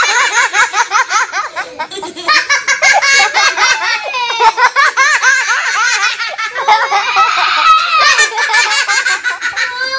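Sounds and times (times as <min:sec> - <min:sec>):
children laughing: 0:00.0 - 0:09.9.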